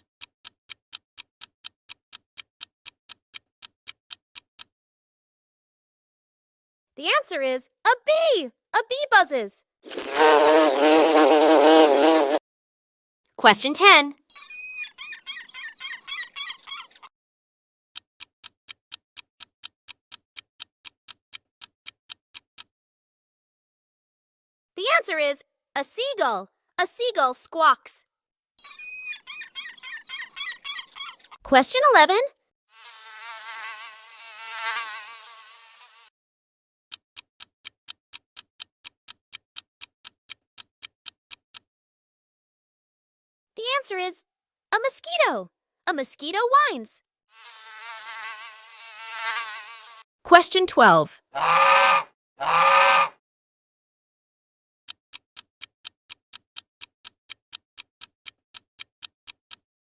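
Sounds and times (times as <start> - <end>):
clock-like ticking: 0.0 - 4.7, 18.0 - 22.7, 36.9 - 41.7, 54.9 - 59.6
mosquito whine: 9.9 - 12.4.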